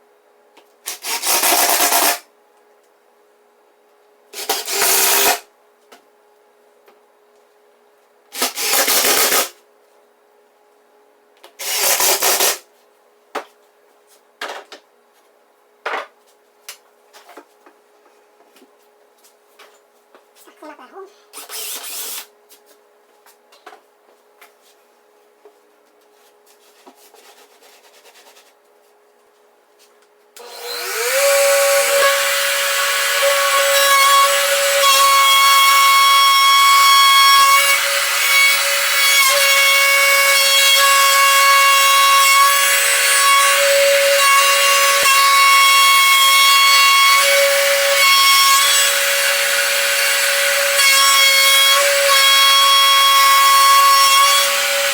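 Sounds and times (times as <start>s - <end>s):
power saw whining through plywood: 30.4s - 54.9s.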